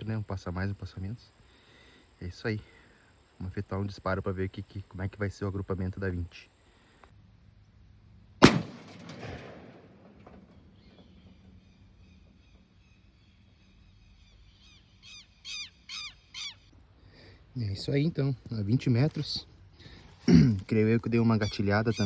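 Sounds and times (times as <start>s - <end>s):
shotgun shot with echo: 8.4s - 10.3s
bird falling calls: 21.3s - 22.0s.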